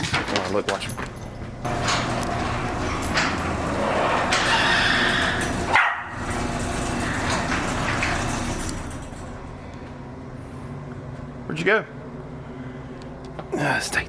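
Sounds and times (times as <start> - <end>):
dog barking and yipping: 5.7 - 6.2.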